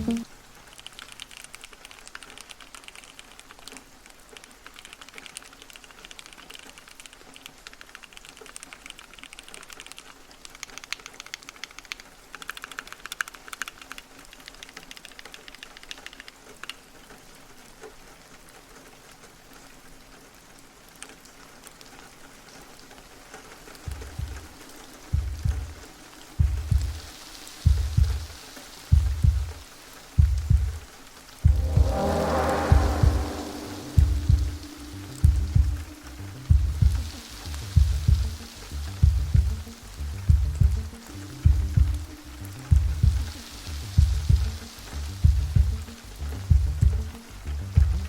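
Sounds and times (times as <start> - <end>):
mechanical keyboard typing: 4.4 - 16.8
deep thumps: 31.5 - 35.9.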